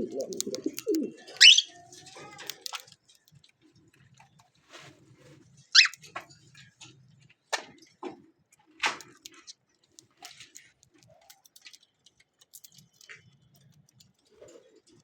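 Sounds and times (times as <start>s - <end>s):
pigeon cooing: 0.0s - 1.9s
parrot chatter: 0.0s - 2.9s, 5.8s - 6.1s
parrots shrill calls: 1.4s - 1.8s, 5.8s - 6.0s.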